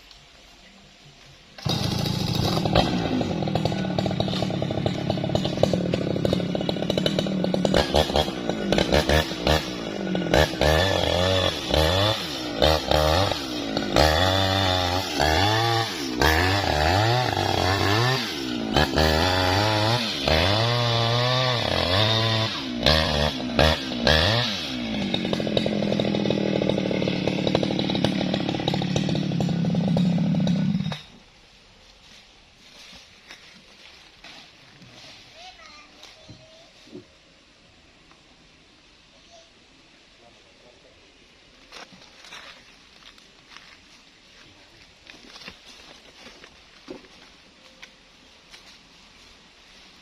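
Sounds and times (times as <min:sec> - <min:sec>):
chainsaw cutting wood: 0:01.6 - 0:31.3.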